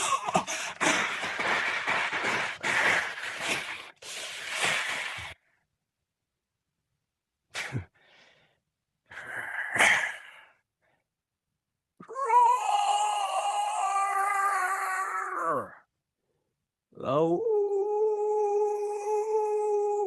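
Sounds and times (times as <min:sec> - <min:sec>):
breathy hissing vocal noises: 0:00.0 - 0:05.4, 0:09.1 - 0:10.6.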